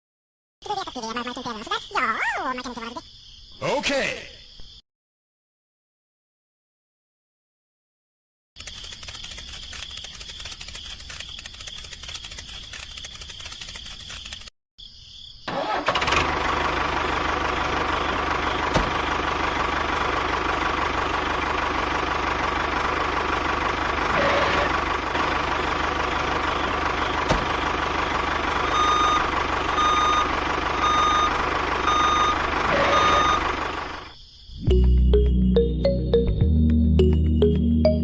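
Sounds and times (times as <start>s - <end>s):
toy truck motor whir: 8.6s - 14.5s, 23.9s - 25.2s
reversing alarm beeps: 28.6s - 33.5s.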